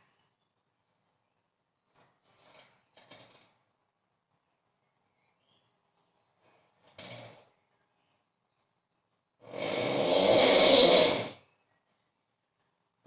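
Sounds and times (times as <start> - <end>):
man snoring loudly: 9.4 - 11.4.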